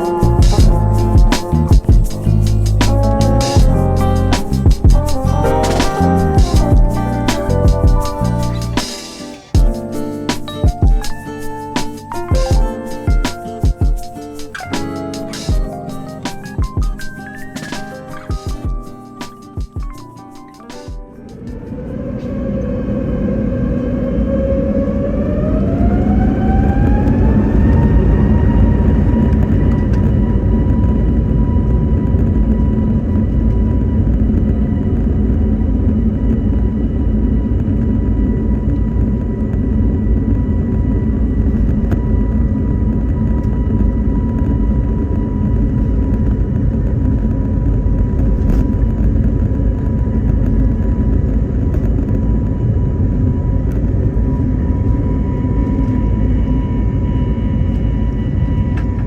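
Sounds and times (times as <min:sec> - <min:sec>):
heavy low rumble: 0:00.0 - 0:08.8, 0:21.4 - 0:59.0.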